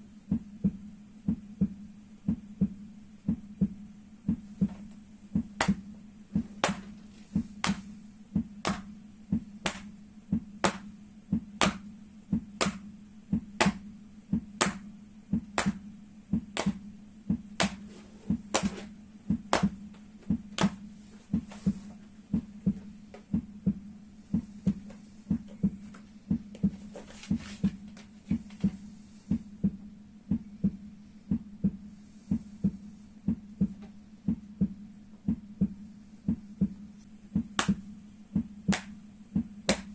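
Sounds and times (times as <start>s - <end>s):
rhythmic heartbeat thumping: 0.0s - 39.9s
hands slapping feet: 4.6s - 5.8s, 6.4s - 7.9s, 8.6s - 8.9s, 9.6s - 9.9s, 10.6s - 10.9s, 11.6s - 11.9s, 12.6s - 12.8s, 13.6s - 13.8s, 14.6s - 14.8s, 15.4s - 15.8s, 16.4s - 16.8s, 17.6s - 23.4s, 24.4s - 28.8s, 37.6s - 37.8s, 38.7s - 39.0s, 39.7s - 39.9s
low pulsing throb: 7.4s - 17.6s, 18.3s - 21.5s, 22.2s - 26.8s, 28.3s - 39.7s.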